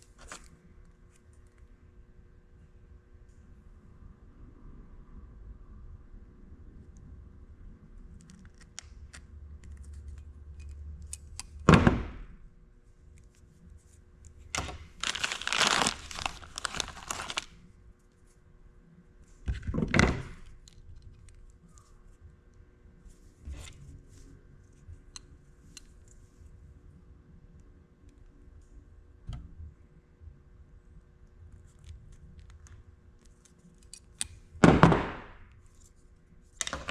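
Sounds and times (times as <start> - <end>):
crinkling and tearing: 14.6 - 17.6.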